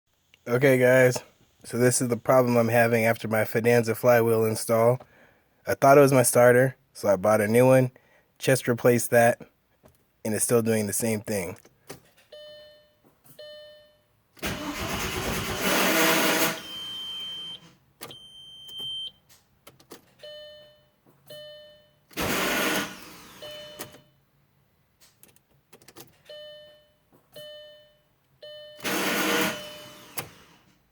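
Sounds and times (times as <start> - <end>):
car starter whirring: 14.4 - 18.2, 22.1 - 24.0, 28.8 - 30.8.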